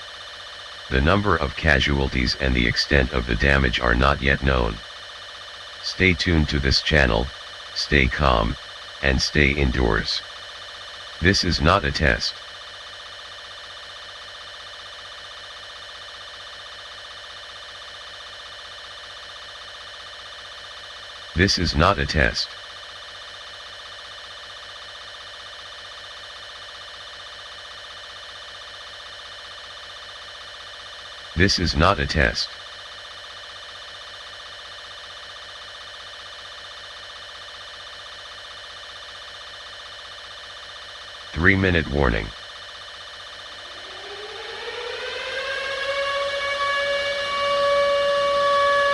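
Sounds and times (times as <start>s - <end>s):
fluttering electronic alarm drone: 0.8s - 12.4s, 16.2s - 23.2s, 26.2s - 48.9s.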